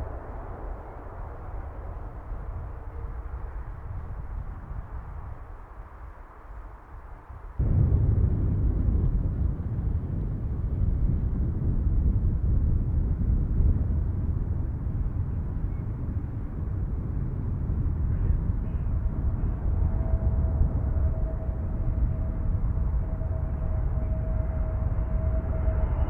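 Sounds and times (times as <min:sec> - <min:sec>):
aircraft rumble passing: 0:07.6 - 0:26.0.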